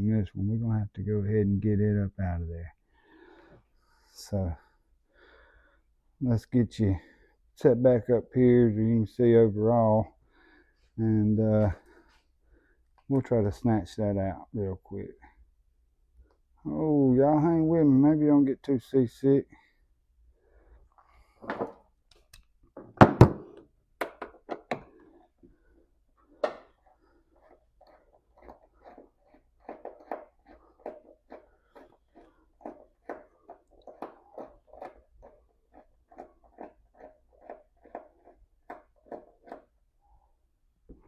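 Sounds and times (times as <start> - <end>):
handling knocks and clunks: 21.4 - 21.9, 22.7 - 25.2.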